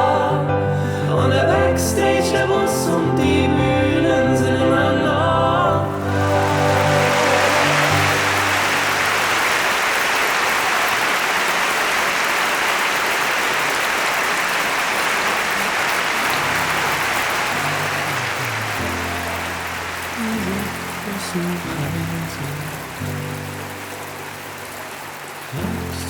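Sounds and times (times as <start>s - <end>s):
audience applauding: 5.9s - 26.0s.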